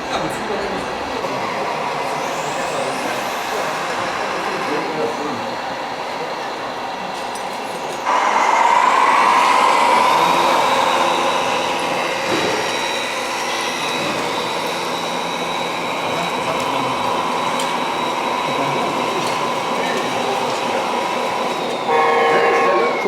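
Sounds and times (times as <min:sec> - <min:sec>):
electric motor and gearbox whine: 0:08.1 - 0:21.3.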